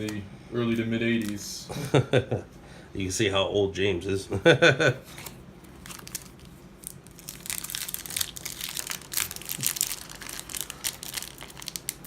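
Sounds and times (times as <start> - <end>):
foil wrapper crinkling: 5.1 - 12.0.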